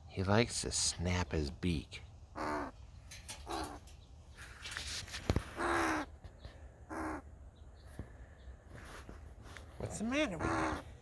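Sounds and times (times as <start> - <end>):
crow cawing: 2.3 - 2.8, 5.6 - 6.1, 6.9 - 7.3.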